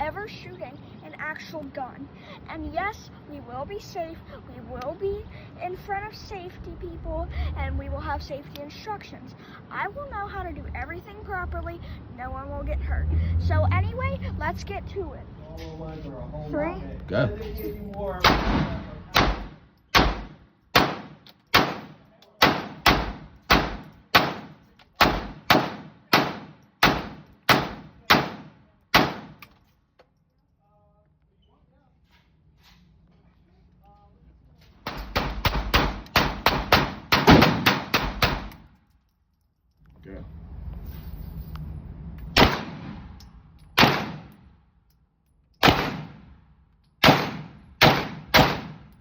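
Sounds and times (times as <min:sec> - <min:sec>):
gunshots with echo: 0:18.2 - 0:29.4, 0:34.9 - 0:38.5, 0:42.4 - 0:43.1, 0:43.8 - 0:44.3, 0:45.6 - 0:46.3, 0:47.0 - 0:48.9.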